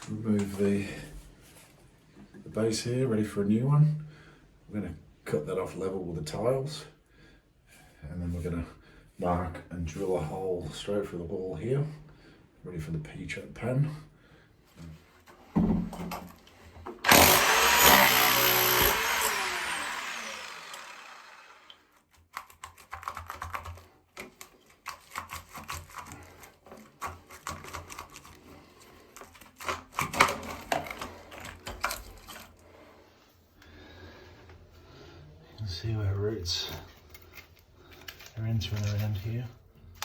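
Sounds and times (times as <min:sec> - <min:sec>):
power tool running: 0:17.0 - 0:21.9.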